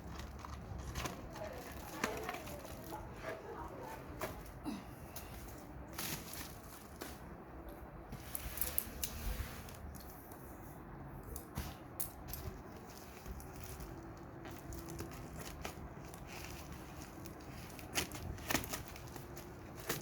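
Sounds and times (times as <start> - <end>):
plastic packaging crinkling: 0.0 - 3.6, 12.4 - 20.0.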